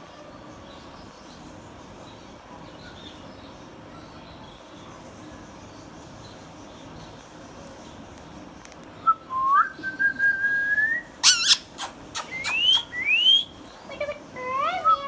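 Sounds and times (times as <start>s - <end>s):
parrot whistling: 9.3s - 13.6s, 14.6s - 15.0s
parrot squawk: 11.2s - 15.0s.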